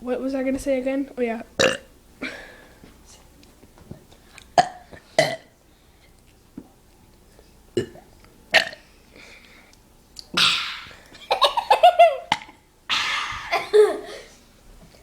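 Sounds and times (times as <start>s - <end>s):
person burping: 1.6s - 1.9s, 8.6s - 8.8s, 10.4s - 11.0s.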